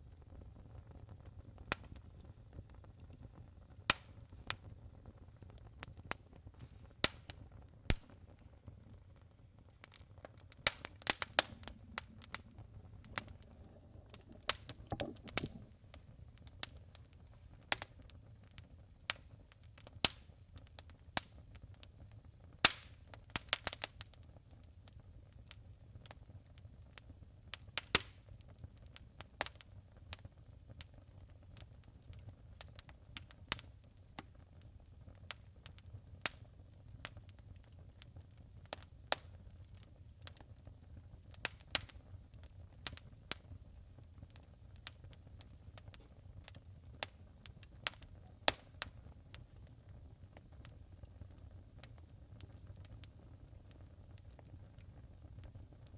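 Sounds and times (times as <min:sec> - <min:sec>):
wood fire crackling and popping: 0:00.0 - 0:55.9
low rumble: 0:11.4 - 0:15.9.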